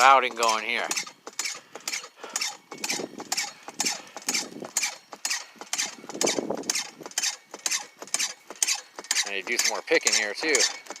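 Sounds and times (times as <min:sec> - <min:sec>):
gravel rattling in a pan: 0:05.5 - 0:11.0.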